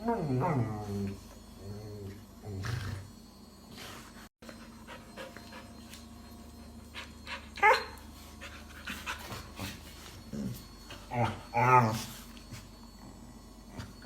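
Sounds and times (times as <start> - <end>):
dog panting: 4.4 - 5.8, 8.2 - 10.0.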